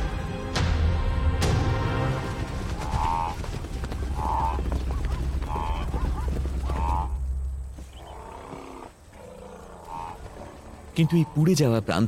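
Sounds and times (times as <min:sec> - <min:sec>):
fire rumbling and crackling: 0:01.7 - 0:07.8
bird calls: 0:02.7 - 0:11.9.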